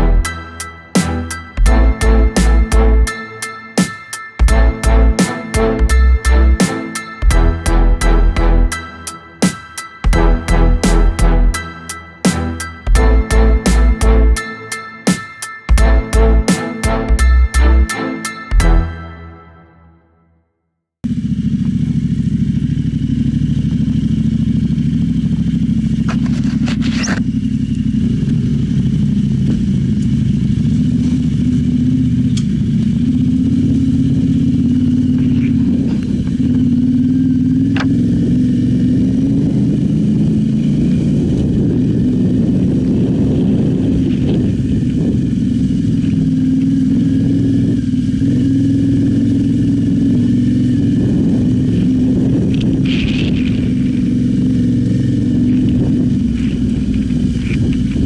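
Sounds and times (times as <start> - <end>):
motorcycle engine running: 21.0 - 58.0.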